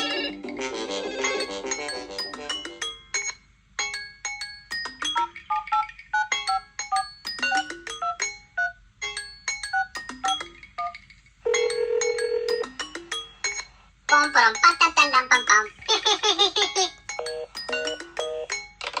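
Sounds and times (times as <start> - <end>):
phone ringtone chiming melody: 0.0 - 15.6, 17.1 - 18.8.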